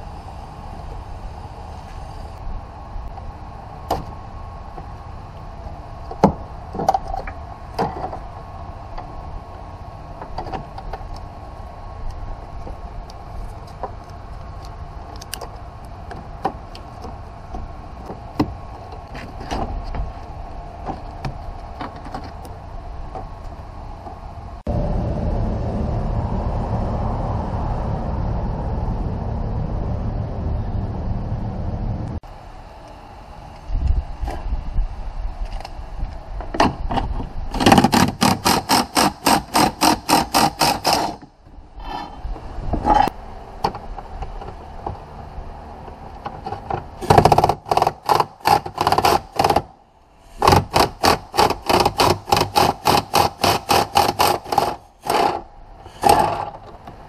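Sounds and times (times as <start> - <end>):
steady hum: 0.0 - 47.2
wind on microphone rumble: 16.9 - 32.3, 33.6 - 37.8, 41.5 - 47.0.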